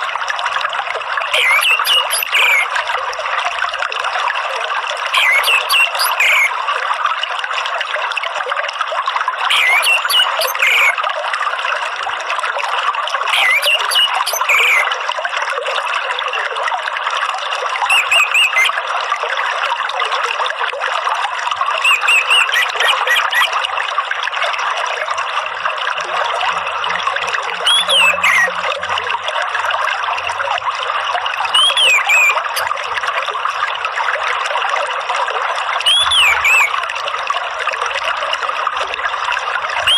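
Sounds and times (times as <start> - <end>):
running water trickling: 0.0 - 39.9
whistled bird call: 1.3 - 2.8, 5.1 - 6.5, 9.5 - 11.0, 13.3 - 14.9, 17.9 - 18.8, 21.8 - 23.6, 27.6 - 28.6, 31.5 - 32.7, 35.8 - 36.8.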